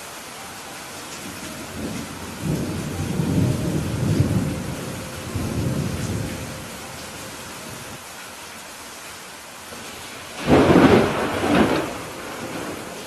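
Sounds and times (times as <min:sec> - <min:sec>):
steady rain: 0:00.0 - 0:13.0
rolling thunder rumble: 0:01.2 - 0:08.0, 0:09.9 - 0:13.0.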